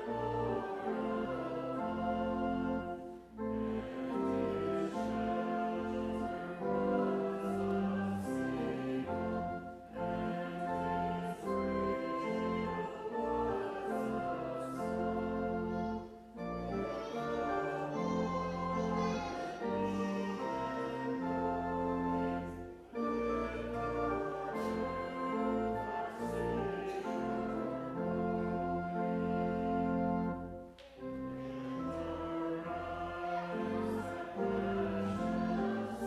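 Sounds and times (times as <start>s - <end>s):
congregation singing a hymn: 0.0s - 36.0s
organ: 0.0s - 36.0s.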